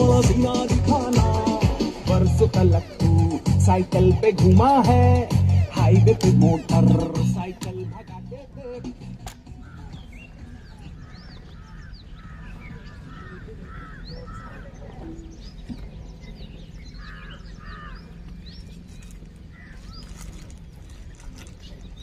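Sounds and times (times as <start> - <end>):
small birds chirping: 6.5 - 22.0
crows cawing: 11.0 - 14.6, 17.0 - 18.2, 19.5 - 20.0.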